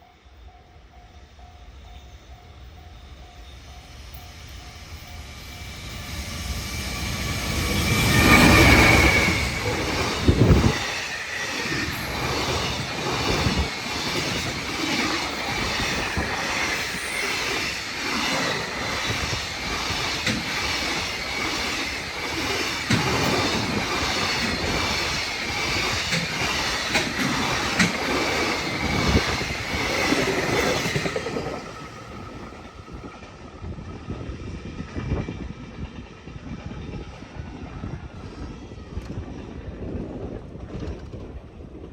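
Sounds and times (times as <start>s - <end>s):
freight train passing: 0.0s - 41.9s
wheels clattering over rail joints: 8.0s - 32.1s
crossing warning bell: 8.3s - 20.0s.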